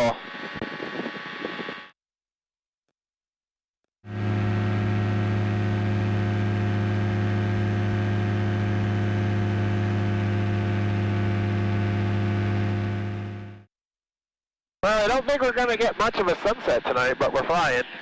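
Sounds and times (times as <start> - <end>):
aircraft engine drone: 0.0 - 1.9, 4.1 - 13.6.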